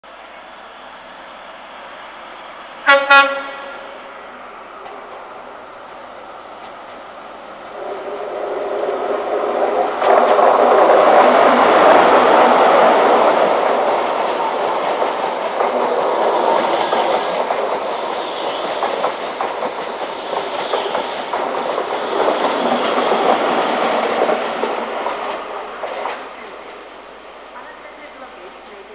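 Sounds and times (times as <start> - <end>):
train wheels clattering: 2.9 - 26.9
high hiss: 12.6 - 24.9.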